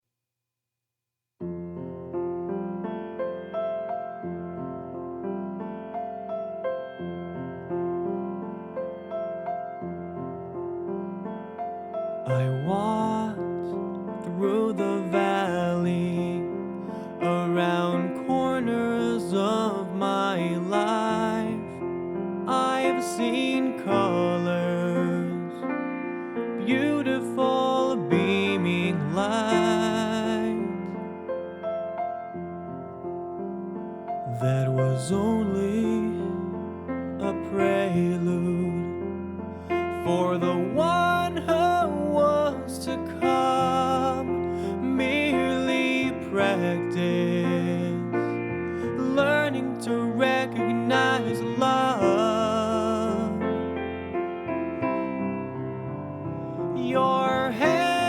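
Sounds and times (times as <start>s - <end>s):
slow piano melody: 1.4s - 58.0s.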